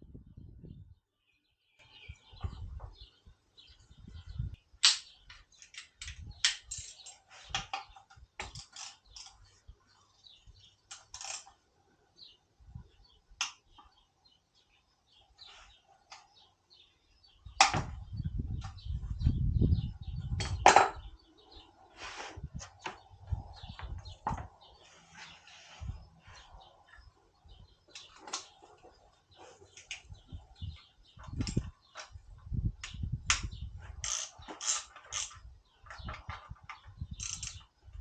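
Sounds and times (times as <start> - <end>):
sharp clicks and knocks: 31.2 - 38.0.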